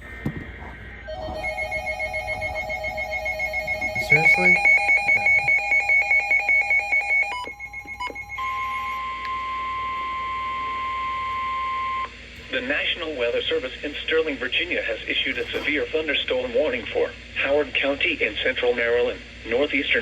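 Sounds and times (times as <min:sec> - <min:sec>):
steady single-pitch warning tone: 0:00.9 - 0:12.2
pulsing warbling alert signal: 0:01.1 - 0:09.0.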